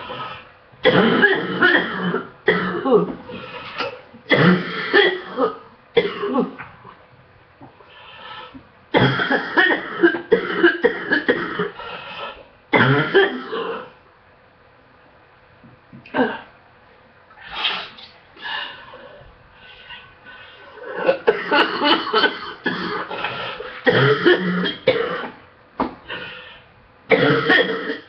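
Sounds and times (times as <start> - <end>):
person coughing: 0.8 - 6.7, 9.0 - 11.8, 12.8 - 14.0, 16.1 - 16.6, 20.7 - 25.4, 27.1 - 28.0.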